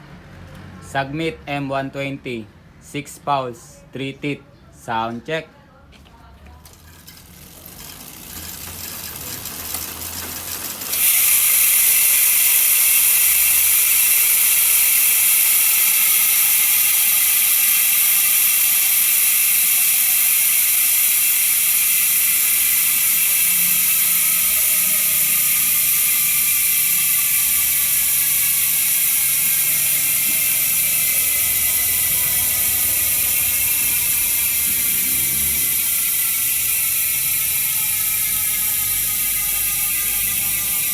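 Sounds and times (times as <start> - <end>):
bicycle hub ratcheting clicks: 6.5 - 40.9
freewheeling hub high buzz: 6.7 - 40.9.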